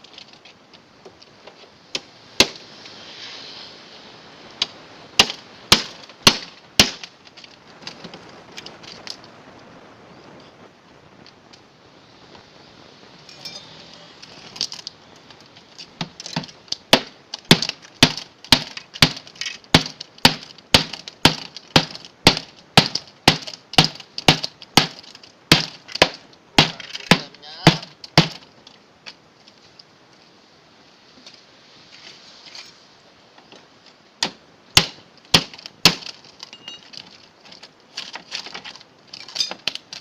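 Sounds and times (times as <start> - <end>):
machete chopping metal: 5.2 - 7.1, 16.0 - 28.4, 34.2 - 36.2.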